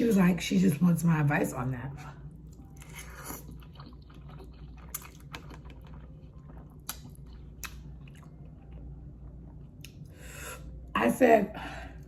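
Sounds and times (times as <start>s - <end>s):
chewing noodles: 2.4s - 10.1s.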